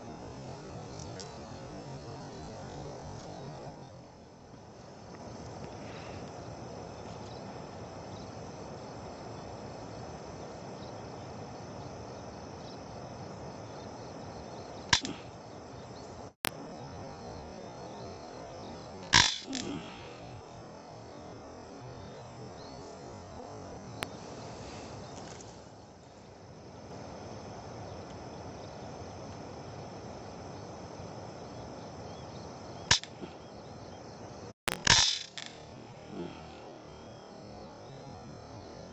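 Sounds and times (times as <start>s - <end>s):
insects chirring: 0.0s - 38.9s
outdoor background hiss: 0.0s - 38.9s
air rifle shot: 19.1s - 19.8s, 34.7s - 35.6s.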